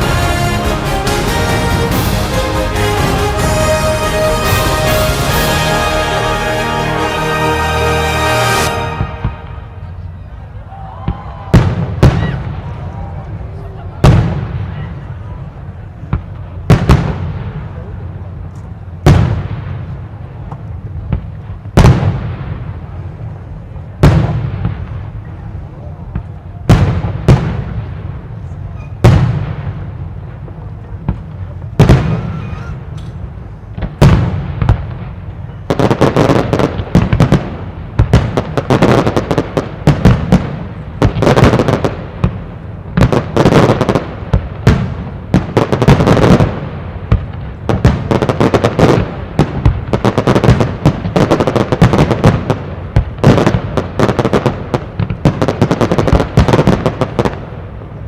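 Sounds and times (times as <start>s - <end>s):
firework crackle: 0.0s - 58.0s.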